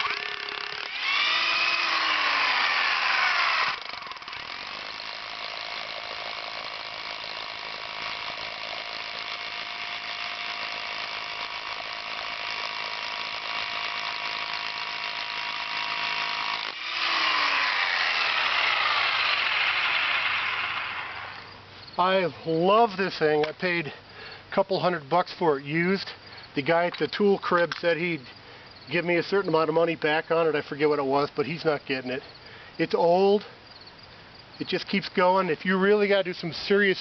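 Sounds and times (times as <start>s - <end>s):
rotary hammer drilling concrete: 0.0s - 21.6s.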